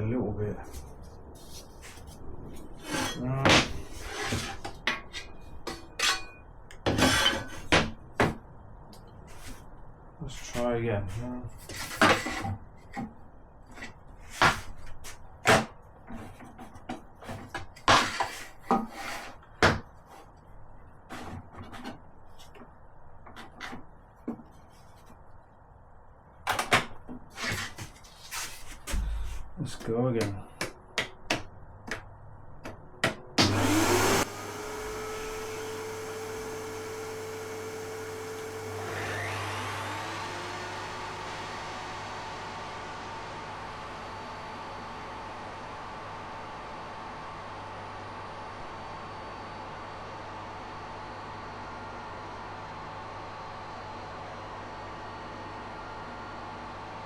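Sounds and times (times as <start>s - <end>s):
wood knocking on table saw: 33.0s - 42.2s.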